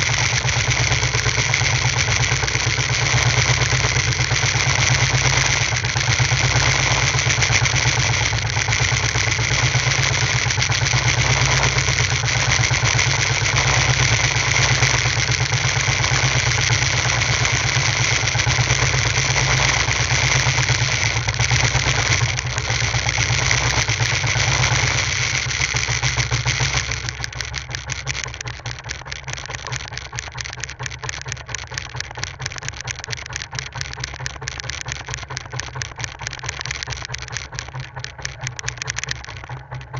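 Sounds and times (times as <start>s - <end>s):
boat engine running: 0.0s - 39.9s.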